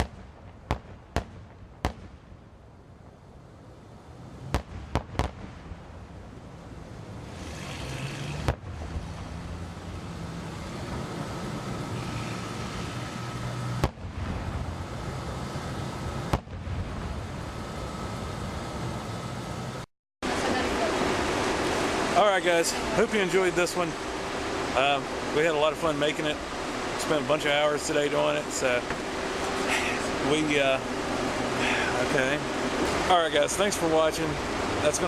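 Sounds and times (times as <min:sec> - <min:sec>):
fireworks bangs: 0:00.0 - 0:02.5, 0:04.4 - 0:06.0, 0:13.7 - 0:14.8, 0:16.2 - 0:17.3
steady background noise: 0:00.0 - 0:35.0.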